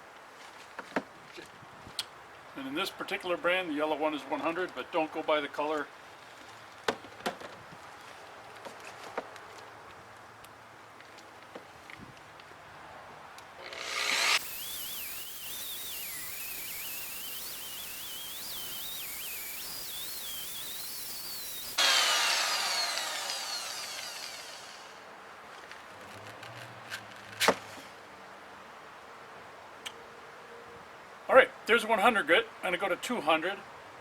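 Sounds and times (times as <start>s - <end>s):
grinder whining: 13.6s - 25.0s.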